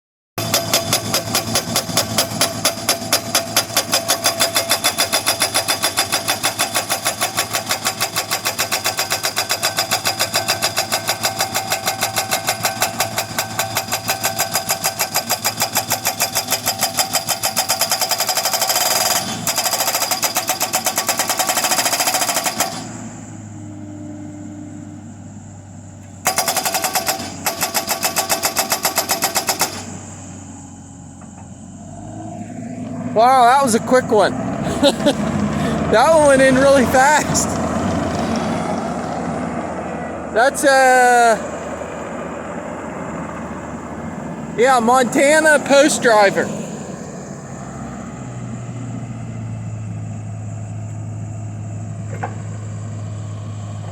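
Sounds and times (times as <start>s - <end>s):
post driver hammering: 0.4s - 22.9s
engine running: 0.4s - 53.9s.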